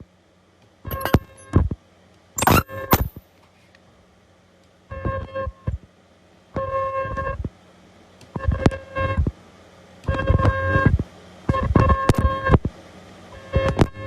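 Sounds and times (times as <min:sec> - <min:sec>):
ultrasonic welder pitched tone: 0:00.9 - 0:01.6, 0:02.4 - 0:03.2.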